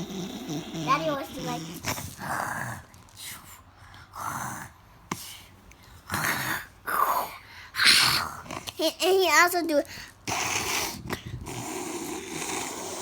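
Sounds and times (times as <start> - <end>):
child imitating snoring: 0.0 - 2.8, 6.1 - 9.0, 10.3 - 13.0.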